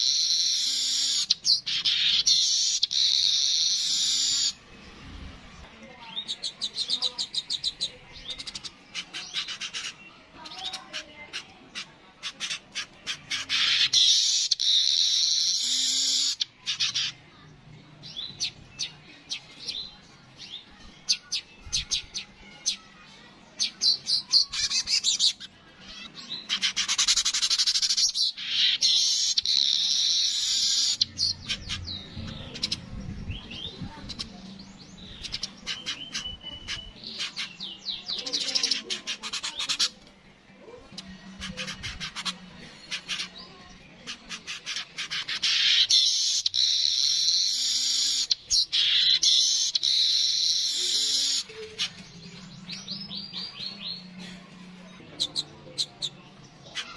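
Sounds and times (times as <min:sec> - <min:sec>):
bird ticking chirps and buzz: 0:26.6 - 0:32.8, 0:45.2 - 0:53.4.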